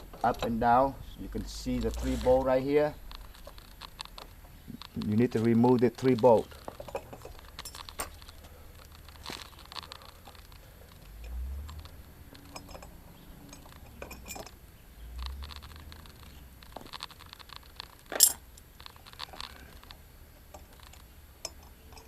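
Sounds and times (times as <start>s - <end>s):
dull low bumps: 0.0s - 18.1s
metal clinks of tools and bolts: 5.0s - 14.6s, 15.3s - 19.6s, 20.4s - 22.0s.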